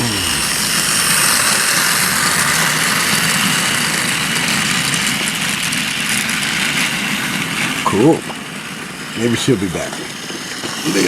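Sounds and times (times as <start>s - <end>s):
toy train motor whirring: 0.0s - 11.0s.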